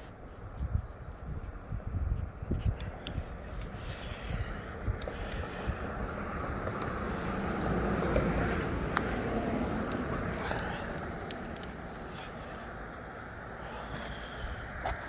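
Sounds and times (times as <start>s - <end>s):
wind rumble on microphone: 0.0s - 15.0s
faint clicks: 2.6s - 5.8s, 8.9s - 12.2s
vehicle passing: 4.2s - 15.0s.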